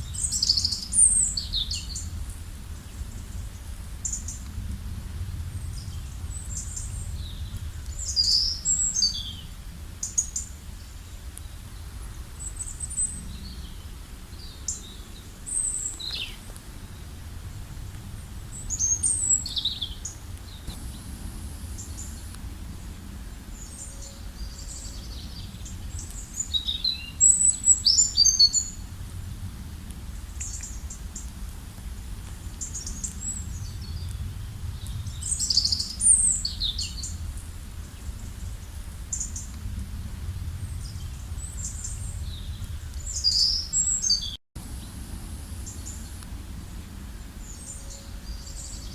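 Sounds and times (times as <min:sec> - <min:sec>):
low rumble: 0:16.8 - 0:26.5, 0:28.7 - 0:43.3.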